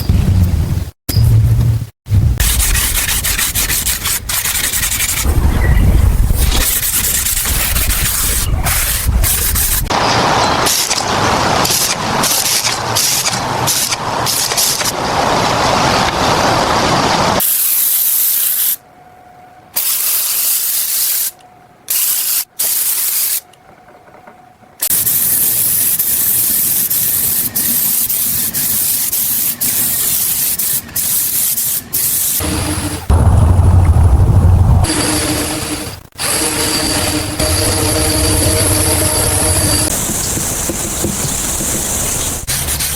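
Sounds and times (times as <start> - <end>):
hissing spray: 6.3 - 10.0, 24.9 - 33.0, 34.9 - 42.9.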